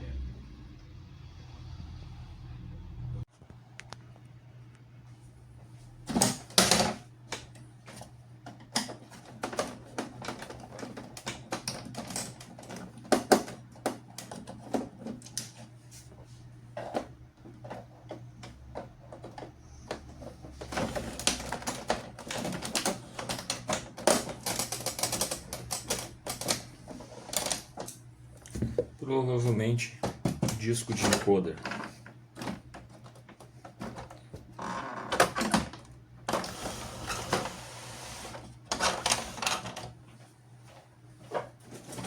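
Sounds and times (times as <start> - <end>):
printer mechanism clattering: 8.6 - 15.6, 17.7 - 28.0, 30.1 - 34.2.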